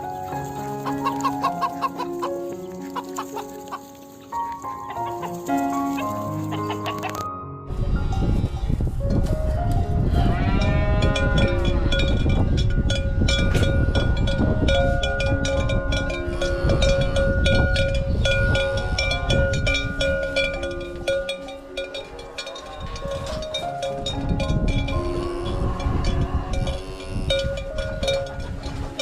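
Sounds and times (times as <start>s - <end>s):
cow mooing: 10.1s - 12.0s, 24.9s - 27.6s
cowbells clanking: 10.5s - 29.0s.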